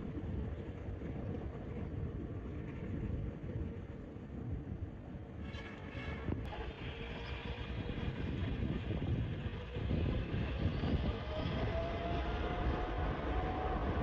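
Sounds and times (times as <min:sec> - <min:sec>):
faint engine whine: 0:00.0 - 0:14.0
wind on microphone: 0:00.0 - 0:14.0
jet engines rumbling: 0:06.4 - 0:14.0.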